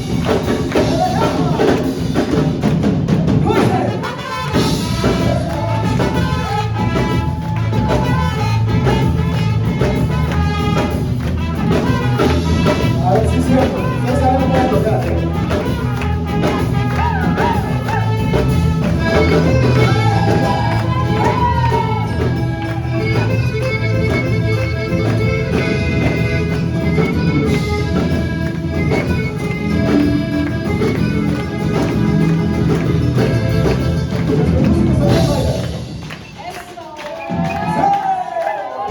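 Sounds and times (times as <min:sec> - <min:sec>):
folk music with singing: 0:03.2 - 0:08.7, 0:12.2 - 0:36.5.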